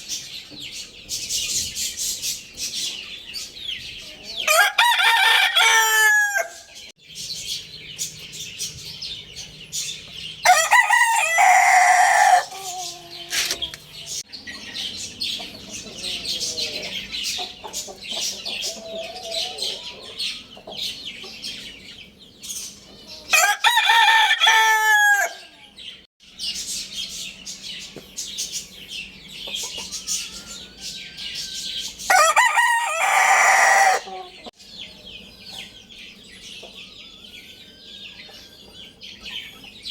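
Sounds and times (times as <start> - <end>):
rooster crowing: 4.2 - 6.7, 10.4 - 13.6, 23.3 - 25.6, 30.0 - 34.5.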